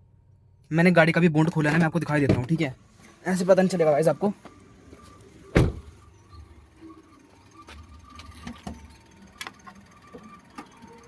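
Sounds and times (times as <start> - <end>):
car engine running: 0.0 - 11.0
high chirp from engine: 3.0 - 11.0
sharp thump: 5.6 - 5.9.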